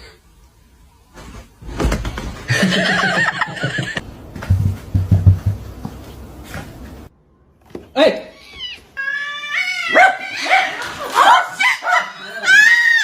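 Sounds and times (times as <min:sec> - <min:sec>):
knocks: 0:04.4 - 0:05.9
animal wavering cry: 0:08.4 - 0:10.8.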